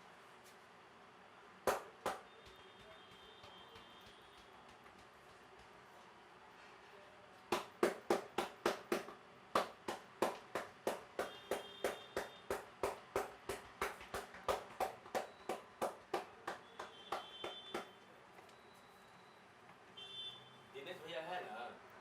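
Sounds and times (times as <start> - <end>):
hands slapping head rapidly: 1.6 - 5.8, 7.5 - 17.9.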